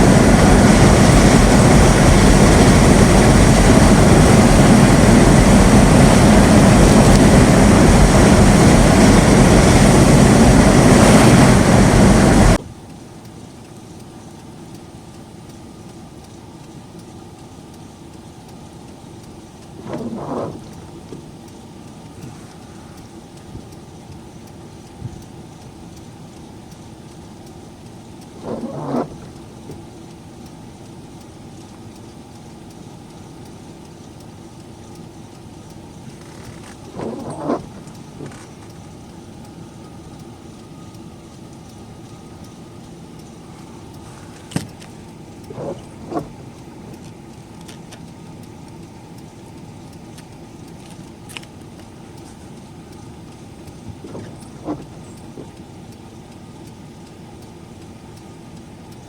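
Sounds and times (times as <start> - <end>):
car engine humming: 0.0 - 59.0
sharp clicks: 31.2 - 59.0.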